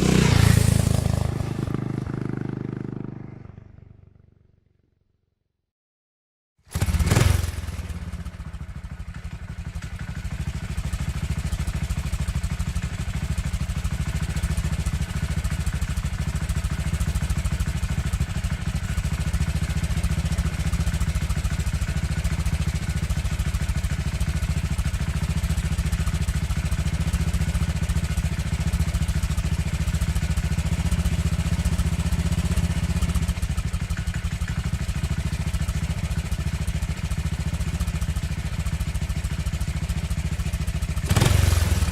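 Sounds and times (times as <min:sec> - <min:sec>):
motorcycle engine running: 0:00.0 - 0:04.7, 0:06.7 - 0:41.9.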